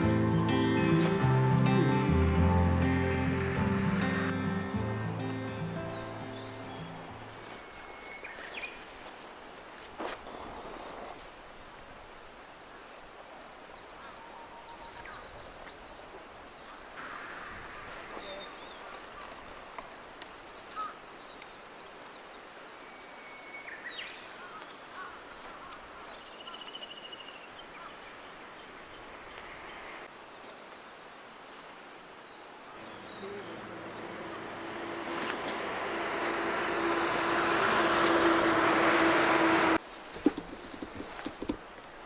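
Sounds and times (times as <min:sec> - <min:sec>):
birds chirping and calling: 0:00.0 - 0:07.2, 0:32.8 - 0:39.3.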